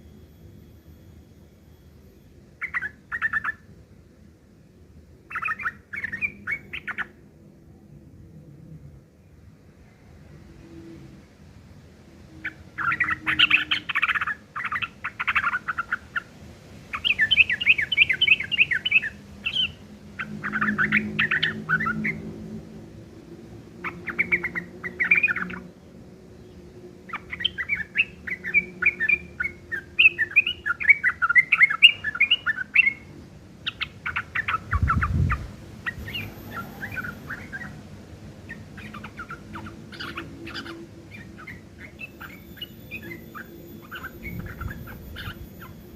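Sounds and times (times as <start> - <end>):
bird chattering song: 1.7 - 3.8, 5.2 - 7.3, 12.3 - 16.3, 16.9 - 22.4, 23.8 - 45.9.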